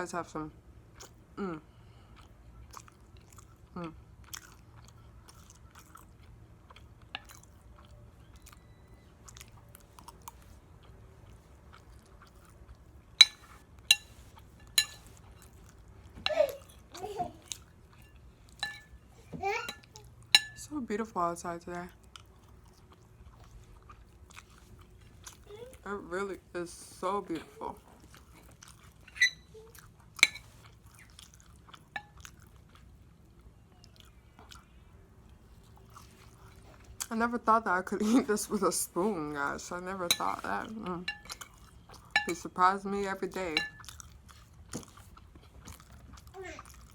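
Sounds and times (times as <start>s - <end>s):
chewing close to microphone: 0.9s - 1.2s, 1.8s - 18.9s, 21.9s - 25.8s, 27.8s - 37.1s, 41.1s - 42.2s, 43.6s - 46.9s
metal utensil clinking on plate: 13.2s - 15.1s, 18.6s - 18.9s, 19.6s - 20.6s, 30.2s - 30.5s, 40.1s - 40.5s, 41.1s - 41.5s, 42.2s - 42.5s, 43.5s - 43.8s.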